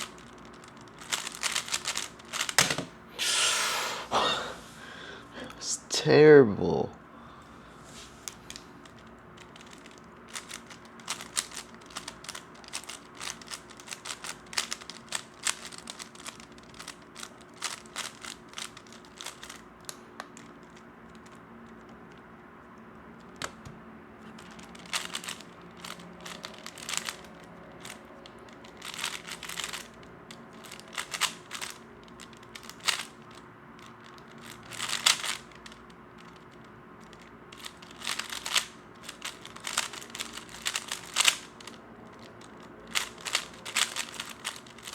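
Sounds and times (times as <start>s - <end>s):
puzzle cube clicking: 0.0s - 2.9s, 8.5s - 19.6s, 24.7s - 27.2s, 30.6s - 31.8s, 34.4s - 35.8s, 37.6s - 42.2s, 42.9s - 44.9s.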